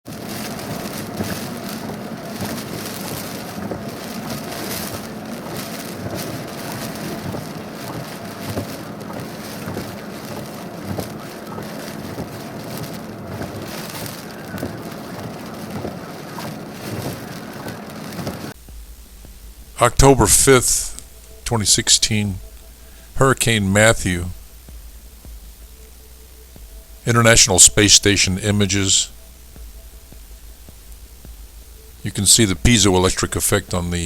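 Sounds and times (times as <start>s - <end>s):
heavy rain hissing: 0.0s - 34.0s.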